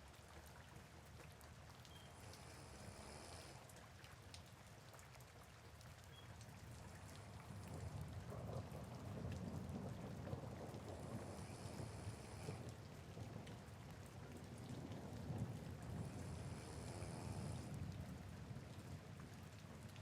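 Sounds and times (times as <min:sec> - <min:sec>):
rain pattering: 0:00.0 - 0:20.0
low rumbling snore: 0:02.2 - 0:03.7, 0:10.8 - 0:12.8, 0:15.9 - 0:17.9.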